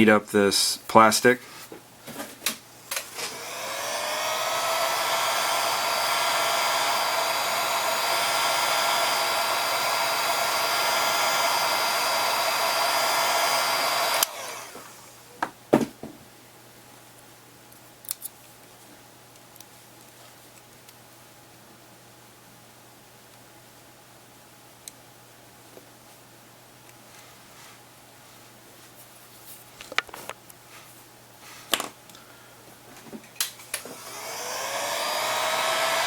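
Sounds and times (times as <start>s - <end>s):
hot-air blower fan whine: 0.0s - 15.9s, 27.1s - 36.0s.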